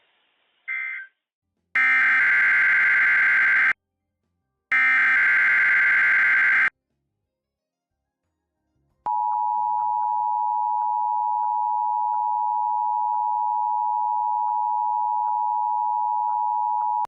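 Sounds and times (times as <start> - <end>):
weather radio alarm tone: 4.7 - 6.7.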